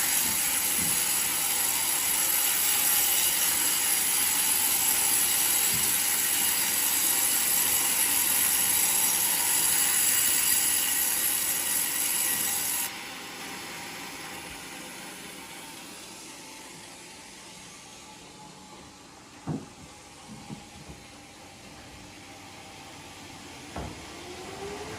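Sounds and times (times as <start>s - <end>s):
saw blade cutting log: 0.0s - 16.8s.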